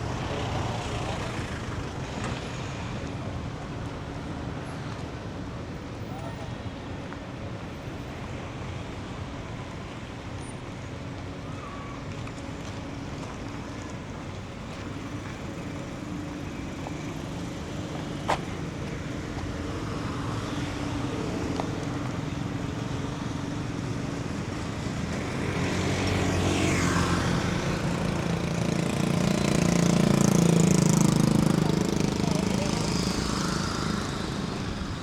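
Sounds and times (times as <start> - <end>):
vehicle engine: 0.0 - 4.8, 12.6 - 35.0
city street traffic: 0.0 - 35.0.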